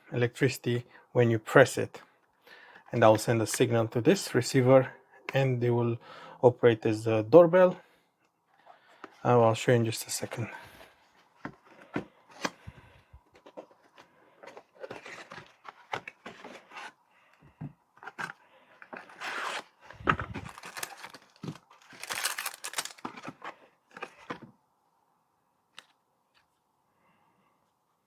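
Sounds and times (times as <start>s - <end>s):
packaging tearing and rustling: 14.5s - 16.9s, 18.0s - 24.3s.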